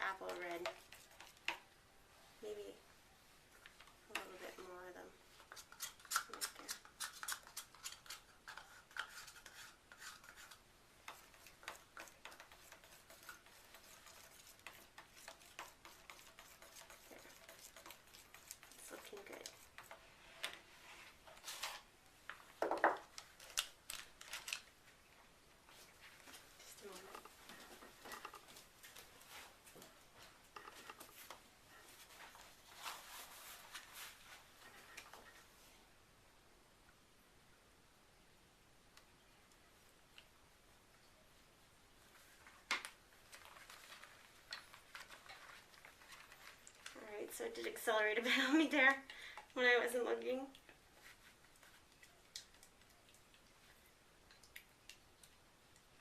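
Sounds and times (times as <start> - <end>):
utensil scraping in container: 5.4 - 21.8.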